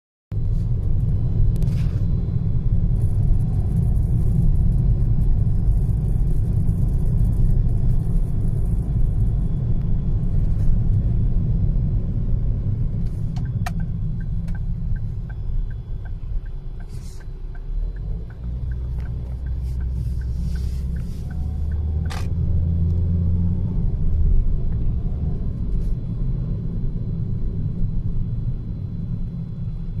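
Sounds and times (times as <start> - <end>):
car engine low rumble: 0.3 - 30.0
light regular ticks: 13.3 - 22.3.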